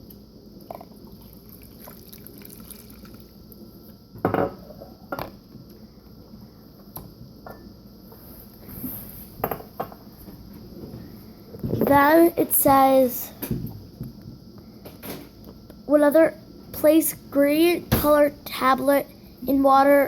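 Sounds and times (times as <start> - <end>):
water pouring into cup: 0.6 - 3.5.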